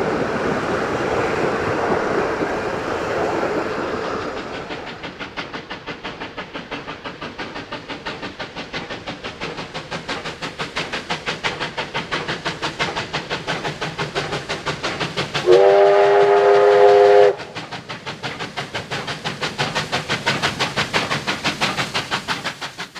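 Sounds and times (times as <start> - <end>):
steam locomotive exhaust chuffs: 0.0 - 22.9
chime steam whistle: 15.4 - 17.6.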